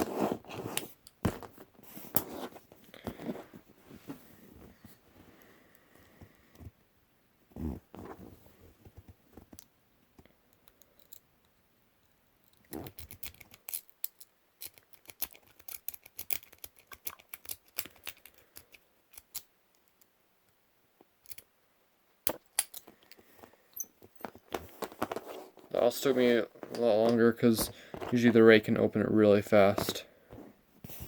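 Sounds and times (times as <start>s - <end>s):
lock pick clicking and scraping: 10.5s - 20.1s, 21.2s - 21.5s, 22.2s - 25.2s.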